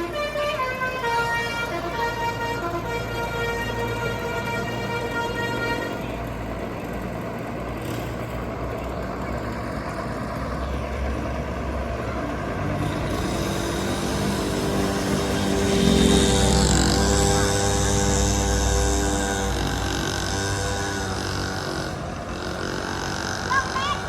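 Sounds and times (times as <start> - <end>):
multi-tone bus horn: 0.0 - 6.6, 12.6 - 24.0
bus engine rumble: 0.0 - 24.0
road noise: 0.0 - 24.0.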